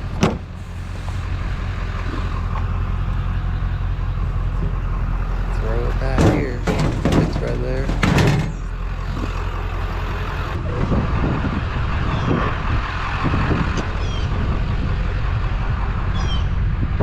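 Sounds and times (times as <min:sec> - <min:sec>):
vehicle engine and road rumble: 0:00.0 - 0:17.0.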